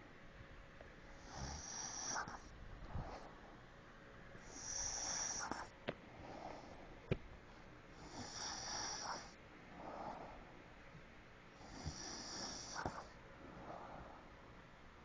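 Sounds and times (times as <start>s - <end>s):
person snoring: 1.2s - 2.4s, 4.5s - 5.7s, 8.0s - 10.4s, 11.7s - 13.1s.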